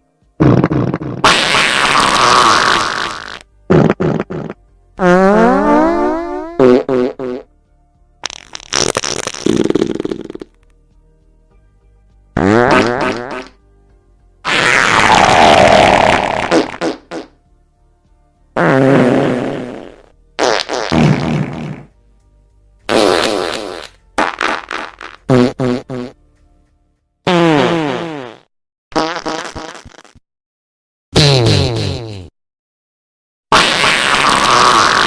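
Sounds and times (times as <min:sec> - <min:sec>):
farts: 0:00.4 - 0:07.5, 0:08.2 - 0:10.6, 0:12.4 - 0:13.6, 0:14.4 - 0:17.4, 0:18.6 - 0:22.0, 0:22.9 - 0:26.2, 0:27.3 - 0:30.2, 0:31.2 - 0:32.3, 0:33.5 - 0:35.0.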